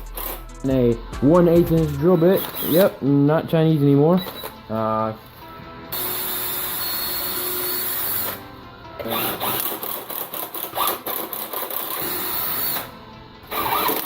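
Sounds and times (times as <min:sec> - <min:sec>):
power drill boring into wood: 0:02.4 - 0:02.9, 0:06.0 - 0:08.4, 0:09.0 - 0:12.9, 0:13.5 - 0:14.0.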